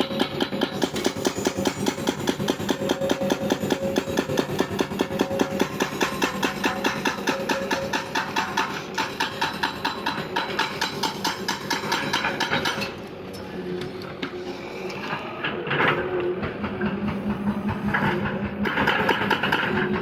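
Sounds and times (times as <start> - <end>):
excavator clanking: 0.1 - 20.0
excavator scraping: 12.8 - 20.0.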